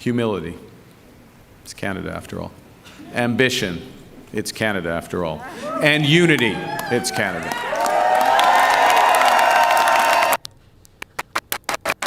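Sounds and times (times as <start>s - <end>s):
crowd cheering and shouting: 4.8s - 10.4s.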